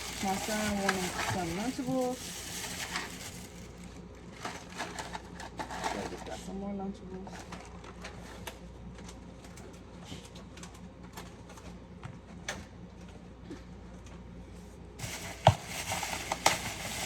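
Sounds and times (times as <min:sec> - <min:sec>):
grocery packages tapping: 0:00.0 - 0:03.8, 0:15.0 - 0:17.0
plastic packaging rustling: 0:00.0 - 0:06.2, 0:15.0 - 0:17.0.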